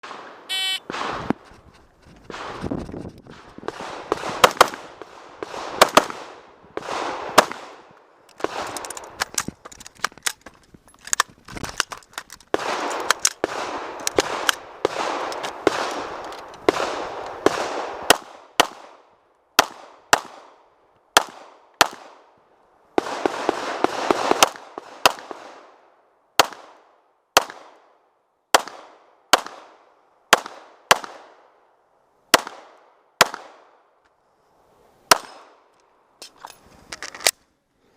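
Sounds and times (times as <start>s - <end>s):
rifle gunshots echoing: 3.3s - 7.8s, 8.4s - 9.1s, 12.5s - 18.9s.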